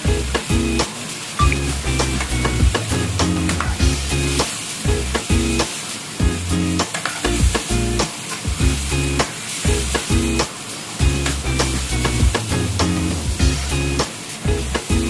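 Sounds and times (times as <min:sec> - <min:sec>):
curry sizzling in a frying pan: 0:00.0 - 0:03.0, 0:03.7 - 0:15.0
background music with steady beat: 0:00.0 - 0:15.0.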